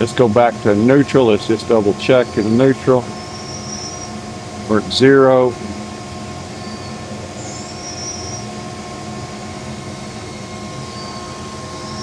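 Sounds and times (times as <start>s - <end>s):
mechanical hum: 0.0s - 12.0s
faint high whistles: 2.1s - 4.2s, 6.5s - 9.4s, 10.1s - 12.0s.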